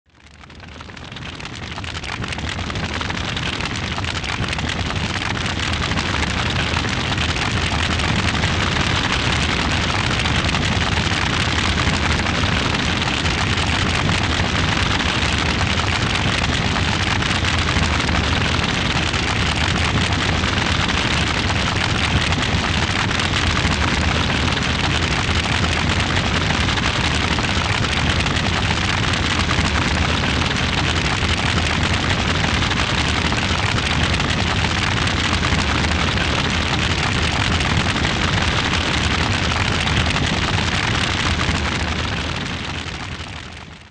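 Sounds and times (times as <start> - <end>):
large fire burning: 0.1 - 43.9.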